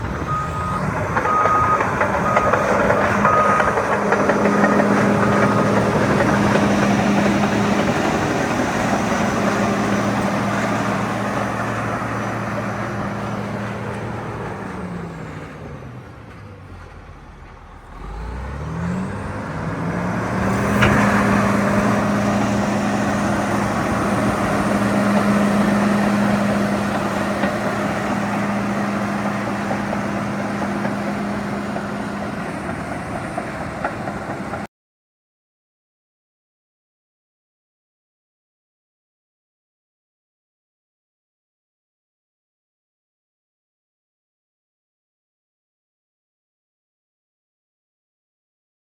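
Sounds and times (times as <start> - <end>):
bulldozer diesel engine revving: 0.0 - 34.7.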